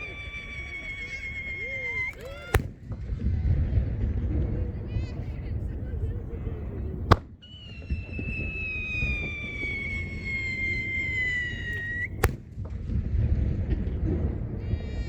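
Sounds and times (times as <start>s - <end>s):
firework whistle sinking in pitch: 0.0s - 2.6s, 7.4s - 12.4s
firework shell bursting: 0.0s - 3.0s, 9.0s - 12.8s
firework launch bang: 0.0s - 3.4s, 7.0s - 14.2s.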